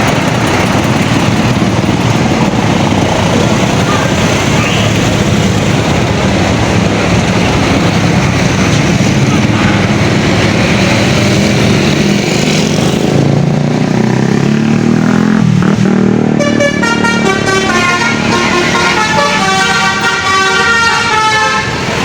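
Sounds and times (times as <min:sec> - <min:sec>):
bus engine running: 0:00.0 - 0:22.0
multi-note bus horn tune: 0:16.3 - 0:22.0.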